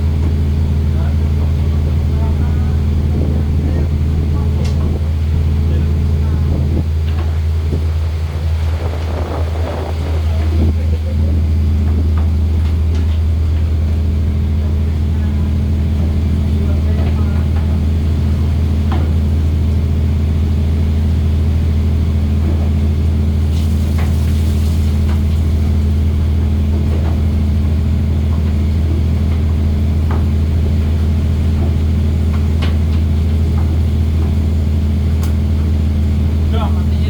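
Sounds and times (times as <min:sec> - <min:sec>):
boat engine humming: 0:00.0 - 0:37.0
knocks and clatter: 0:28.3 - 0:34.5.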